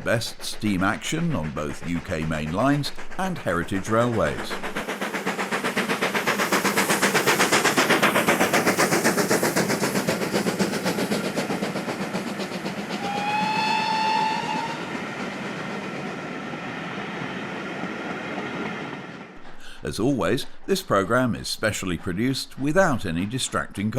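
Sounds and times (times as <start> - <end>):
steam locomotive exhaust beats: 0.0 - 23.9
steam whistle blast: 13.0 - 15.0.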